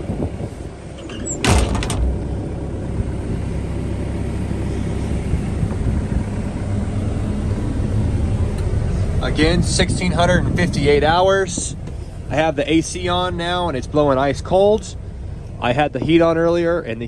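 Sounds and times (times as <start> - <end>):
air conditioning blowing: 0.0 - 17.0
diesel engine running: 0.0 - 17.0
cab door clunking shut: 0.9 - 2.5.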